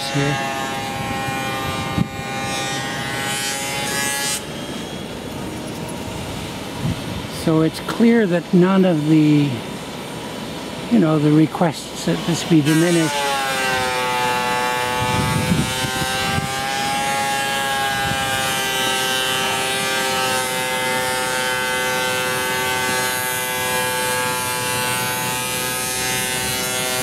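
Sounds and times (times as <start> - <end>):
power machine motor whine: 0.0 - 7.6, 12.1 - 27.0.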